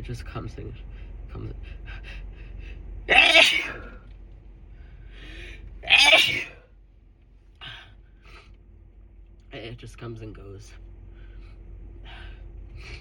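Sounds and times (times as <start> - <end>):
person sneezing: 3.1 - 3.9, 5.9 - 6.6.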